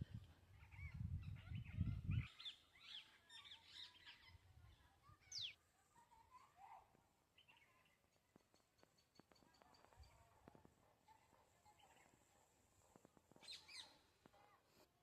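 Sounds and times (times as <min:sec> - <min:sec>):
small birds chirping: 0:00.1 - 0:05.6, 0:07.4 - 0:10.4, 0:13.3 - 0:14.2.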